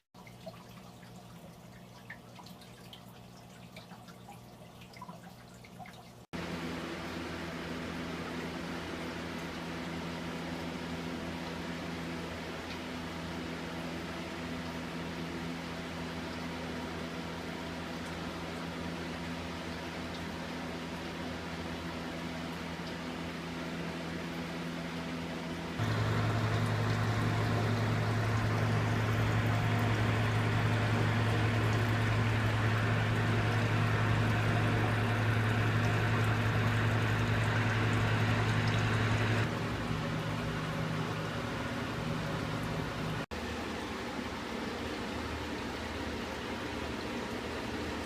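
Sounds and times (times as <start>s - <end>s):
running water: 0.0s - 48.0s
steady electrical hum: 0.0s - 48.0s.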